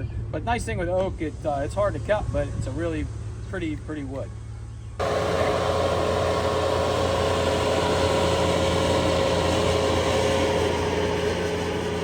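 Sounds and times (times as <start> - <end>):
excavator diesel engine running: 5.0 - 12.0.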